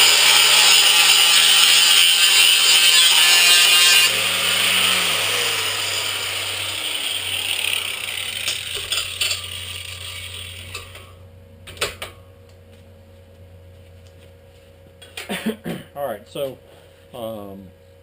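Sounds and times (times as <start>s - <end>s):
power tool whirring down: 0.0s - 11.0s
parts clicking and knocking: 8.3s - 11.1s.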